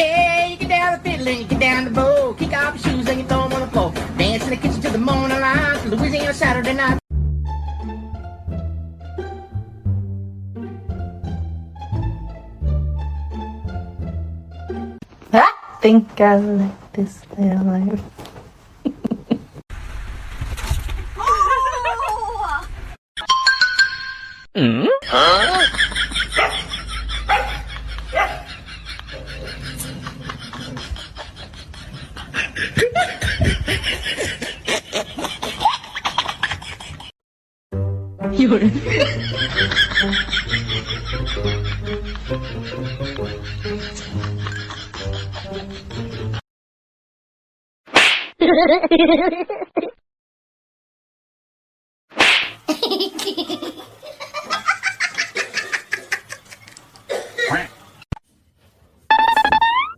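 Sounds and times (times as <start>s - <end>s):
person laughing hard: 18.8s - 19.6s, 24.6s - 37.1s
person laughing in snickers: 18.8s - 19.6s.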